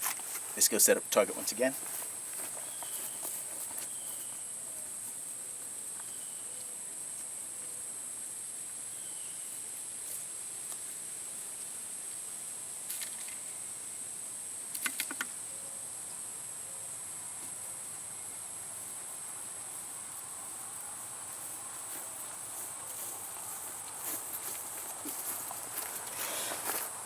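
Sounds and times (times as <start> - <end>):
rustles or steps: 0.0 - 5.8, 18.8 - 27.0
insects chirring: 0.0 - 27.0.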